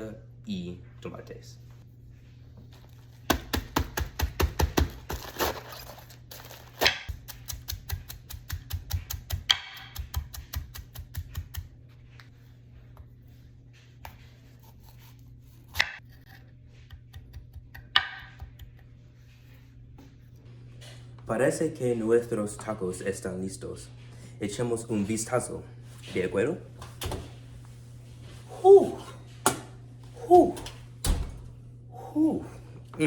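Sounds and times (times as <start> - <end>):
knife chopping on cutting board: 6.8 - 11.7.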